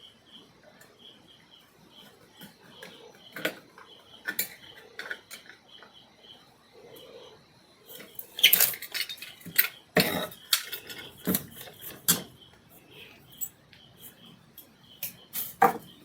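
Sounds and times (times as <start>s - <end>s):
hand tools clicking and clinking: 2.4s - 5.6s, 7.9s - 16.0s.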